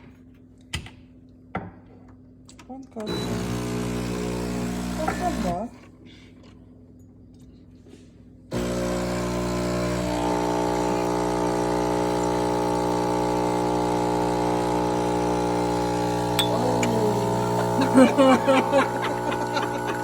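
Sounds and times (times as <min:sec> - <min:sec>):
espresso machine buzzing hum: 0:03.1 - 0:05.7, 0:08.5 - 0:20.0.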